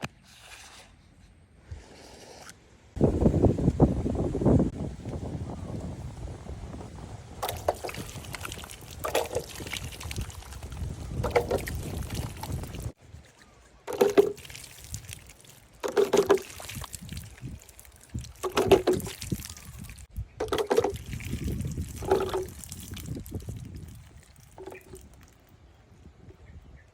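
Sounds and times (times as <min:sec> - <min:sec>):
water sloshing and splashing: 0:07.4 - 0:25.5.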